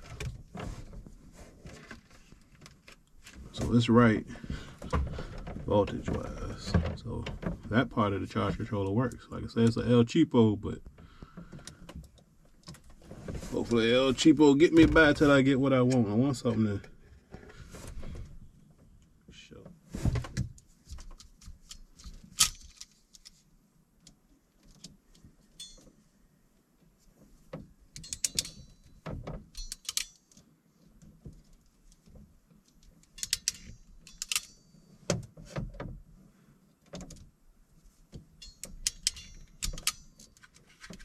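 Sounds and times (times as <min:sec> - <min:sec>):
small metallic clicks: 0:24.0 - 0:26.0, 0:27.9 - 0:34.9, 0:38.4 - 0:41.0
jingling rattles of tools: 0:25.5 - 0:26.0, 0:27.9 - 0:30.5, 0:33.0 - 0:35.1, 0:38.3 - 0:41.0.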